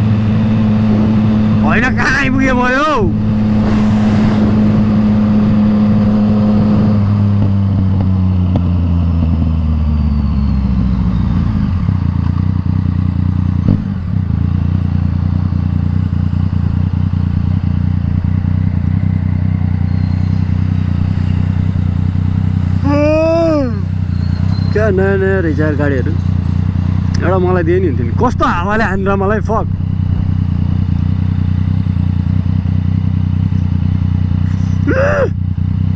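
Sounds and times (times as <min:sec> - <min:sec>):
engine rev blip: 0:00.0 - 0:08.1, 0:19.7 - 0:27.4
motorcycle engine revving and idling: 0:00.0 - 0:35.9.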